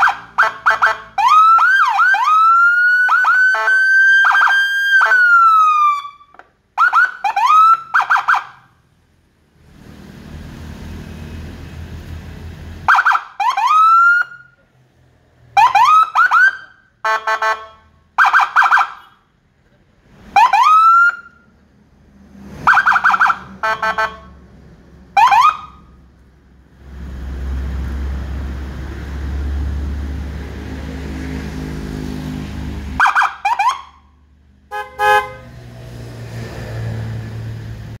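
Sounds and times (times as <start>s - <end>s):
siren whoop chirps: 1.2s - 6.2s
buzzing horn blasts: 3.5s - 4.0s, 17.0s - 18.0s, 22.7s - 24.4s, 34.7s - 35.7s.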